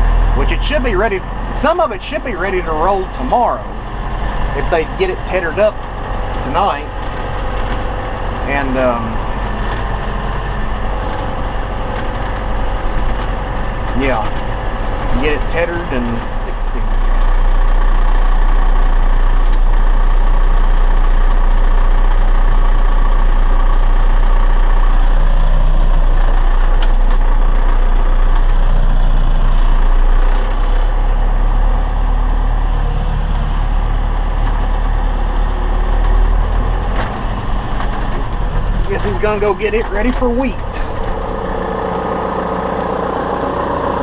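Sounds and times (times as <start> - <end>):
tractor engine running: 0.0 - 44.0.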